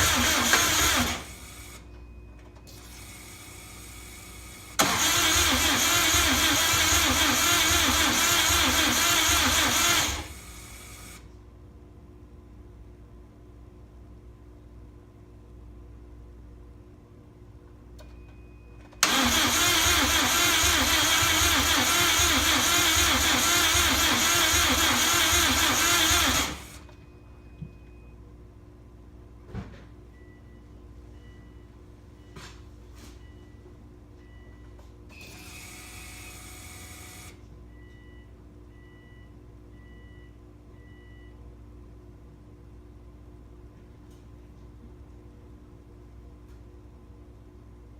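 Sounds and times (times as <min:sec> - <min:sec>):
engine starter cranking: 0:00.0 - 0:01.4, 0:04.8 - 0:10.4, 0:19.0 - 0:26.8.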